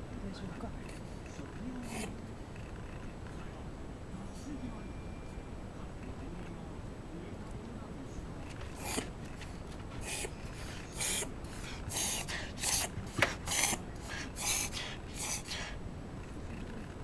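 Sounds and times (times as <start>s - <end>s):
dog reverse sneezing: 1.8s - 2.2s, 8.7s - 15.8s.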